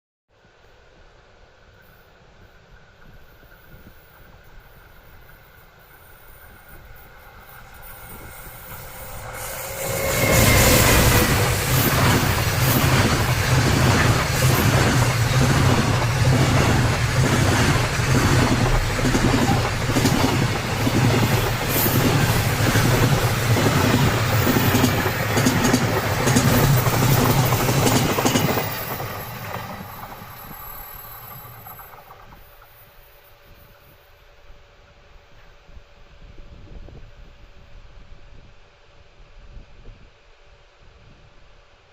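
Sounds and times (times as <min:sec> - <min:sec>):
freight train passing: 0:01.8 - 0:37.5
wheels clacking over rail joints: 0:09.2 - 0:32.8.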